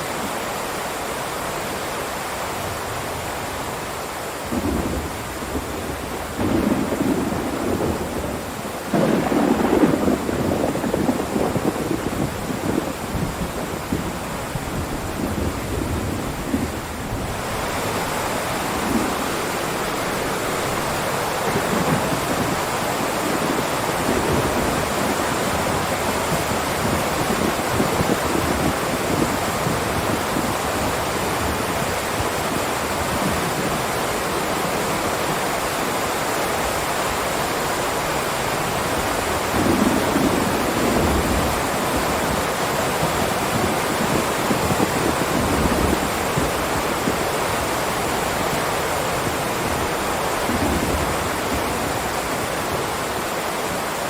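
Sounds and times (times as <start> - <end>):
heavy rain downpour: 0.0 - 54.0
thunder rumbles: 4.5 - 31.9, 39.4 - 47.2, 49.2 - 52.2.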